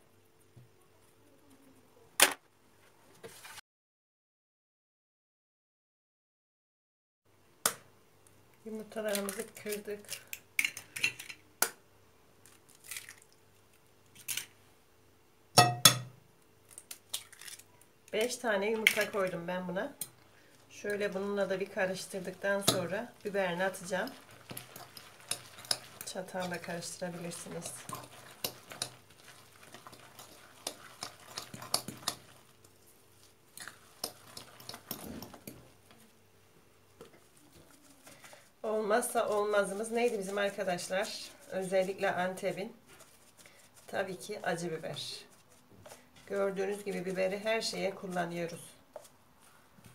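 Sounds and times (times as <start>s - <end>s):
fork clinking against bowl: 15.6s - 16.1s
kitchen bowls and utensils clinking: 15.6s - 16.2s, 21.8s - 32.5s, 33.6s - 35.7s
fork stirring in a bowl: 20.8s - 36.1s, 37.0s - 49.9s.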